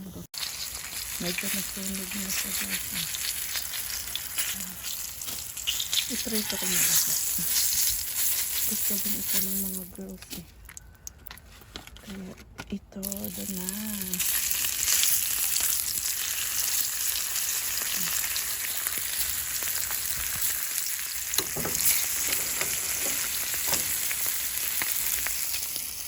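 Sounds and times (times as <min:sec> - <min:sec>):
fish frying in hot oil: 0:00.4 - 0:10.1, 0:13.0 - 0:26.0.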